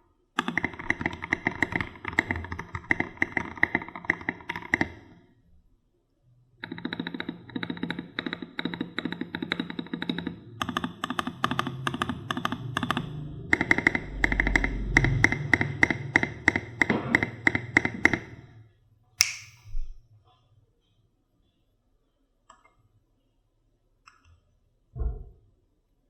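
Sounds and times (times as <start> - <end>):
mechanical keyboard key clacks: 19.2 - 19.6.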